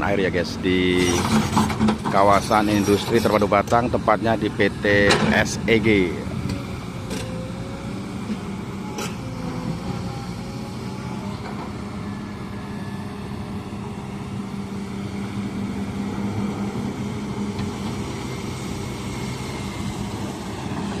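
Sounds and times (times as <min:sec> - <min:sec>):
excavator diesel engine running: 0:00.0 - 0:21.0.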